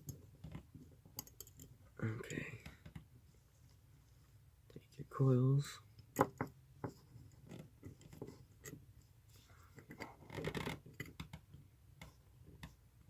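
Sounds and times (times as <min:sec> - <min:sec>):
small metal parts clicking: 0:01.2 - 0:01.7.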